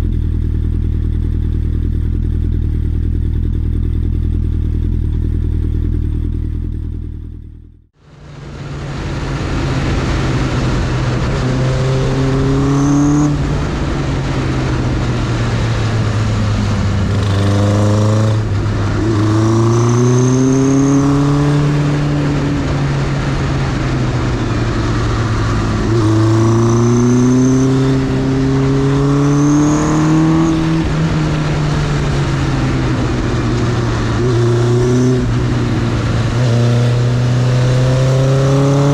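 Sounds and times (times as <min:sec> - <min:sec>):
motorcycle engine shifting gears: 0:00.0 - 0:38.9
wind and road noise: 0:00.0 - 0:38.9.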